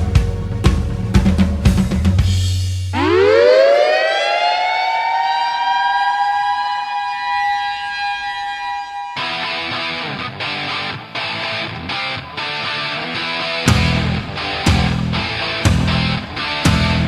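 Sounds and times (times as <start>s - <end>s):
music: 0.0s - 3.3s, 8.8s - 17.0s
air-raid siren wailing: 3.0s - 10.9s.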